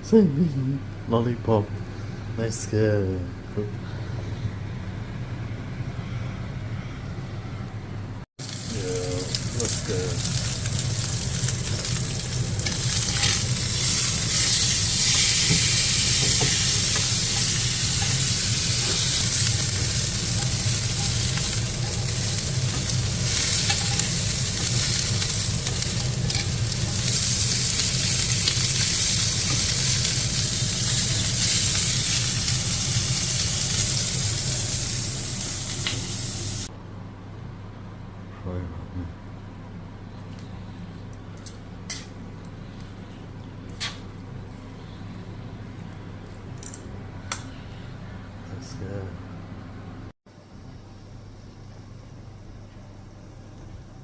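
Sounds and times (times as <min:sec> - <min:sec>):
food sizzling in a pan: 0:08.4 - 0:36.7.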